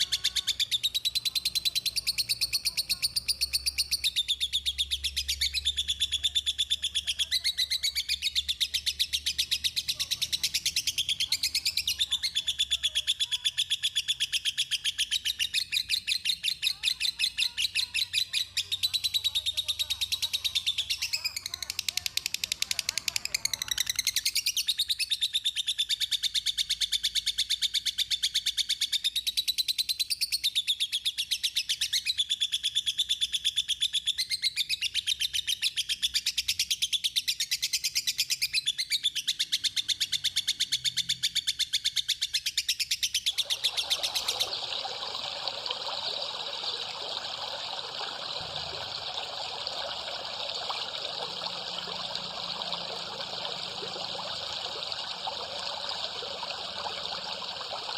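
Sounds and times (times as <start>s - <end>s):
songbird singing: 0.0s - 29.3s, 30.4s - 57.9s
trickling water: 18.6s - 24.7s, 43.1s - 57.9s.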